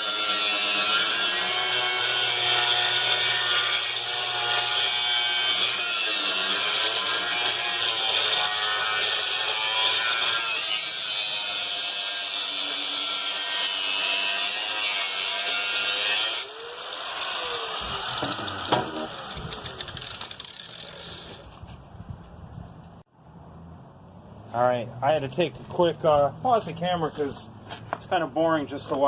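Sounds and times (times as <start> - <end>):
power cutting tool whine: 0.0 - 21.4
tool winding down: 16.2 - 21.4.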